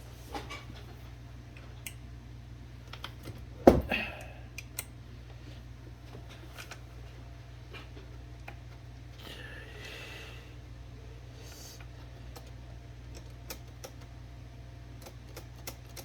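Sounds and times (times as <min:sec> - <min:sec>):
typewriter parts clicking: 0:15.0 - 0:16.0.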